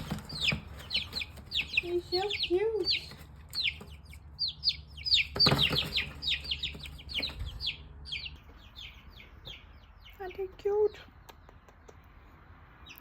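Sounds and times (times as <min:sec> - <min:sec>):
baby chicks peeping: 0:00.0 - 0:13.0.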